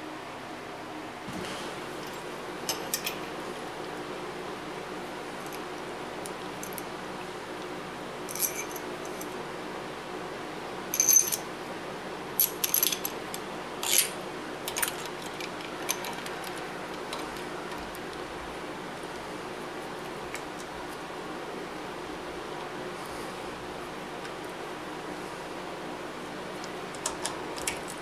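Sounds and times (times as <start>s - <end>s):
steady background hum: 0.0s - 28.0s
steel parts clinking: 8.3s - 9.3s, 11.0s - 11.4s.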